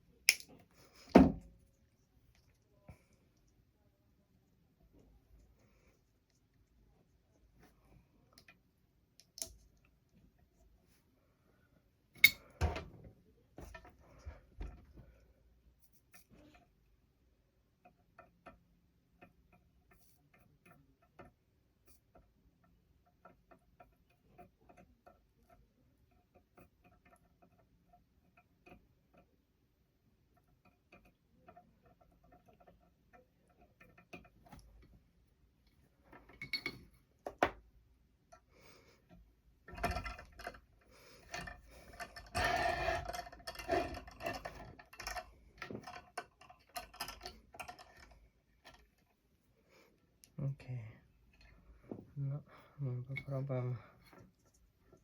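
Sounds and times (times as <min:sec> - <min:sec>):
light clicks and taps of tools: 0:00.3 - 0:01.2, 0:09.2 - 0:10.2
rustling and clattering: 0:38.4 - 0:49.9.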